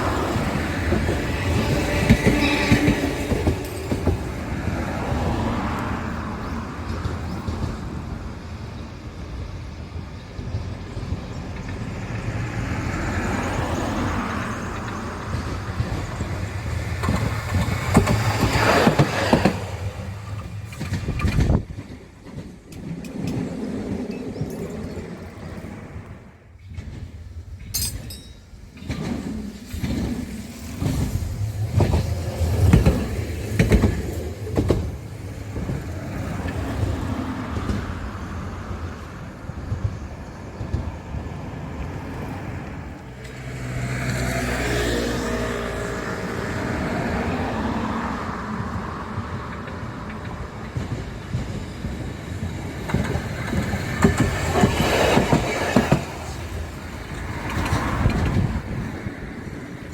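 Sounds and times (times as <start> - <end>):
train wheels knocking over rail joints: 0.0 - 6.0, 13.6 - 25.4, 26.6 - 38.0, 48.6 - 58.9
train low rumble: 0.0 - 59.9.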